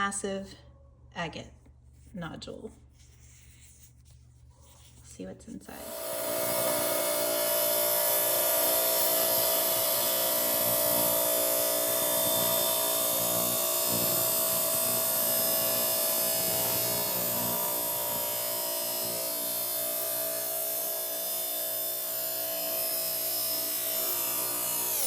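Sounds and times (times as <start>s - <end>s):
saw motor hum: 5.7s - 25.0s
saw blade grinding stone: 5.8s - 25.0s.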